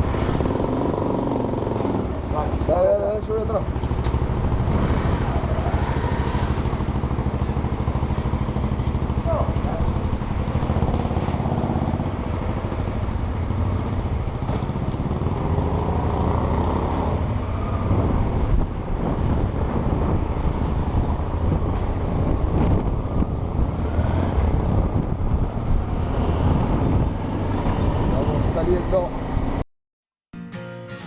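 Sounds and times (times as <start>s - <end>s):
motorcycle engine running: 0.0s - 20.2s.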